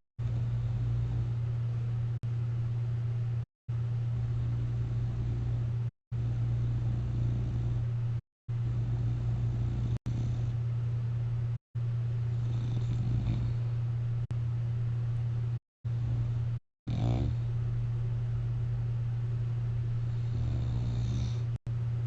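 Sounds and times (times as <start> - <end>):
person snoring with low rumble: 0.2 - 1.6, 4.2 - 10.7, 12.2 - 13.9, 15.9 - 17.6, 19.9 - 21.6
steady low hum: 0.2 - 22.0.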